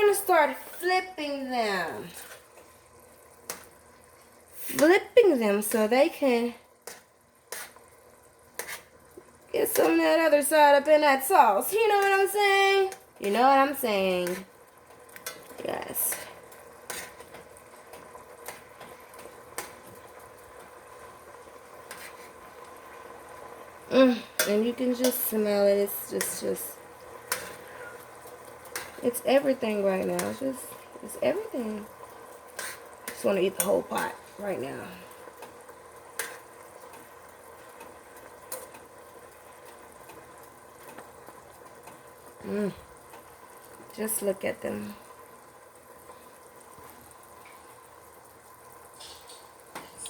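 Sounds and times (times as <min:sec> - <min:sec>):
shrimp sizzling in a frying pan: 0:00.0 - 0:50.0.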